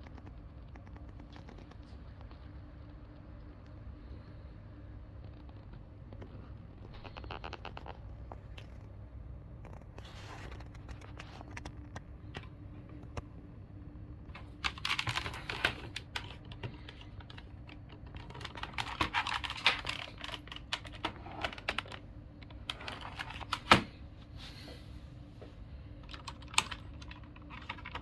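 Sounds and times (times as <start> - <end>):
mechanical keyboard typing: 14.4 - 23.8, 26.0 - 28.0.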